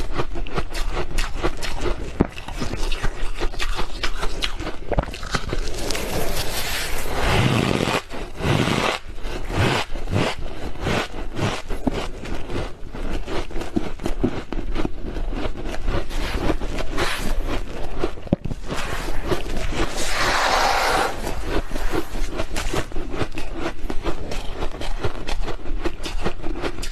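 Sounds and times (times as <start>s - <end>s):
frost being chewed: 0.0s - 26.9s.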